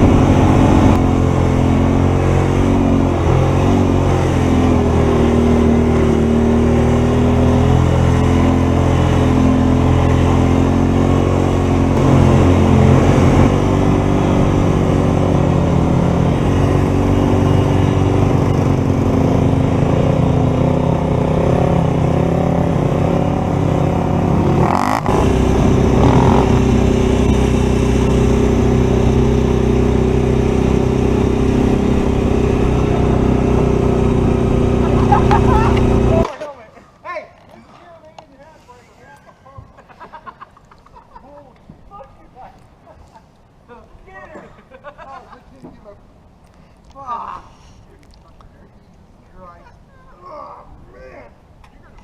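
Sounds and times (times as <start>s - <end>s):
vehicle engine running: 0.0s - 36.3s.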